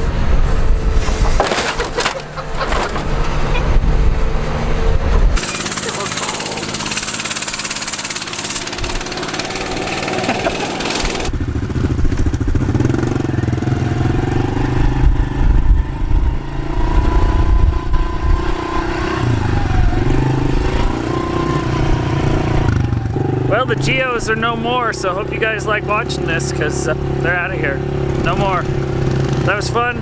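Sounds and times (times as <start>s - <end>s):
engine running wavering pitch: 2.0s - 30.0s
loud hiss: 5.4s - 11.3s.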